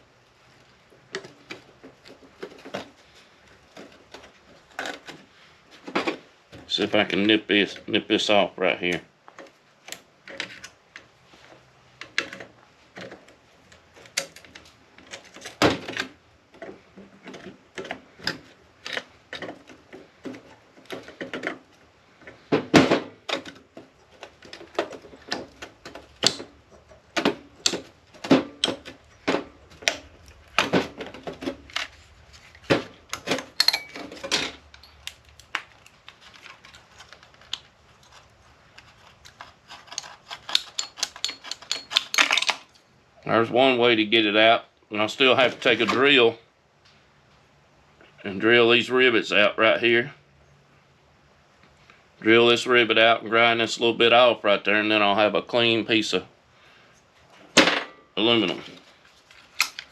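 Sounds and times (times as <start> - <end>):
small parts being pried apart: 0.6 - 6.6, 12.0 - 42.9, 58.5 - 59.9
wire nippers clicking and snapping: 24.2 - 26.8.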